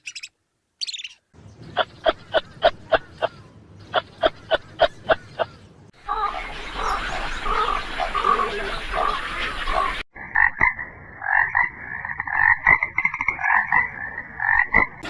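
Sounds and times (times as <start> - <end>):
frogs croaking: 4.0 - 15.0.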